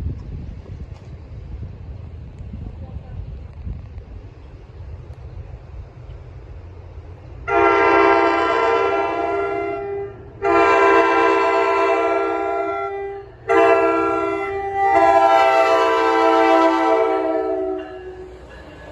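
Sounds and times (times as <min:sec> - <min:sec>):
locomotive air horn blasts: 0:07.4 - 0:18.4.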